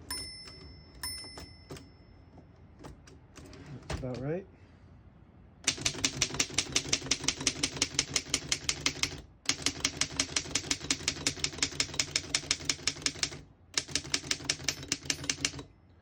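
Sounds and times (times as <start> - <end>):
typewriter keystrokes: 5.6 - 15.7.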